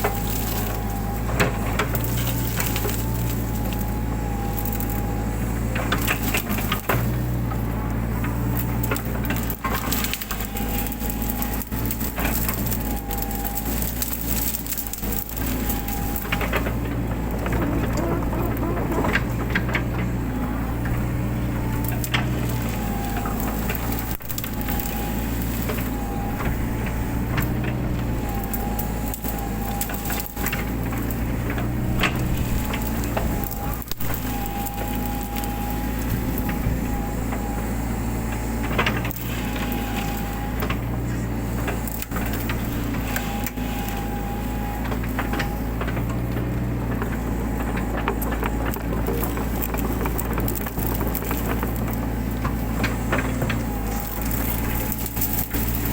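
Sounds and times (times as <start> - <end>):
branches cracking and snapping: 0.0 - 55.9
diesel engine running under load: 0.0 - 55.9
hydraulic whine: 0.0 - 55.9.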